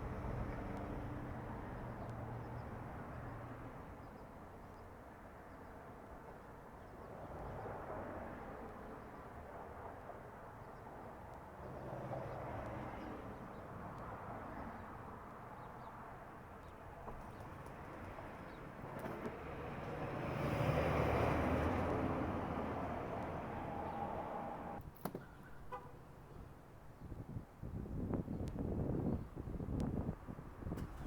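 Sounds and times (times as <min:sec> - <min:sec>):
rumble of passing vehicles: 0:00.0 - 0:24.8.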